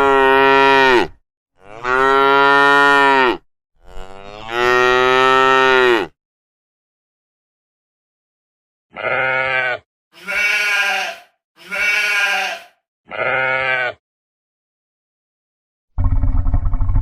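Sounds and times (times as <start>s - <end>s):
sheep bleating: 0.0s - 6.1s, 8.9s - 14.0s.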